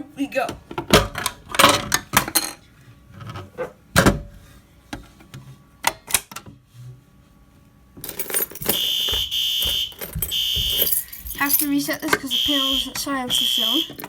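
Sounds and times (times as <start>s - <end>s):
fire alarm horns: 8.6s - 11.0s, 12.2s - 14.0s
alarm pull station clicking: 8.6s - 11.2s, 11.8s - 14.0s.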